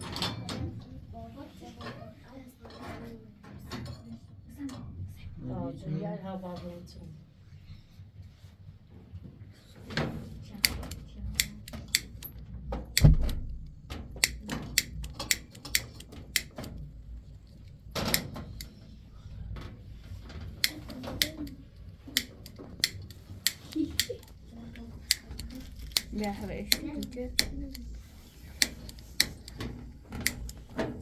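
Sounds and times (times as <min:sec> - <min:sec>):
clicks and knocks of hard objects: 0:10.6 - 0:18.8, 0:19.5 - 0:31.0.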